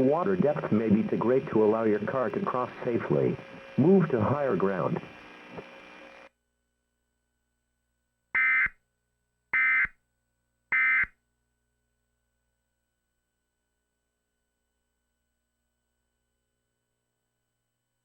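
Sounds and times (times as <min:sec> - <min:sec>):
faint hum: 0:00.0 - 0:06.3.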